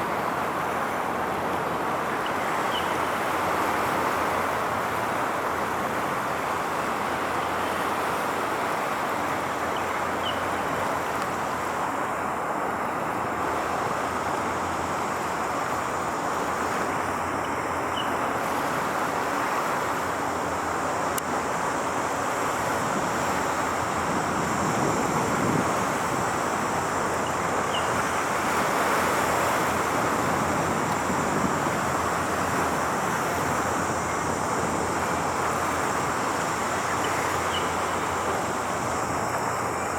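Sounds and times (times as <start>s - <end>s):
distant road traffic: 0.0s - 39.9s
wind on microphone: 21.3s - 39.9s.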